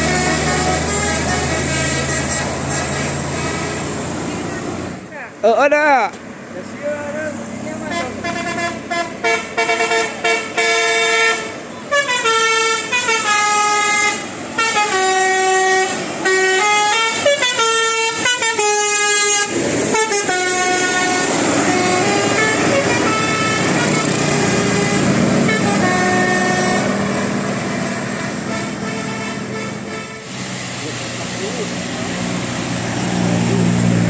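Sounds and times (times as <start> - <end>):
bus musical horn tune: 0.0 - 4.1, 7.9 - 30.4
bus passing rumble: 0.0 - 34.0.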